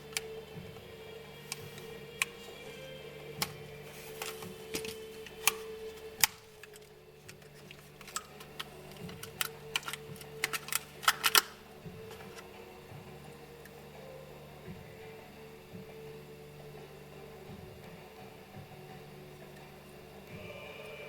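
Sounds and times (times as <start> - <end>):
packaging being handled and opened: 0.0 - 12.6
faint steady hum: 0.0 - 21.0.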